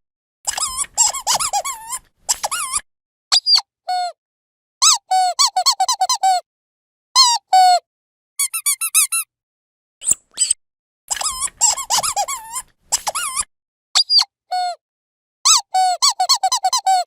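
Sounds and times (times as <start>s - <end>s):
rubber squeaky toy squeaking: 0.5s - 4.1s, 4.8s - 6.4s, 7.2s - 7.8s, 8.4s - 9.3s, 10.0s - 14.8s, 15.5s - 17.0s.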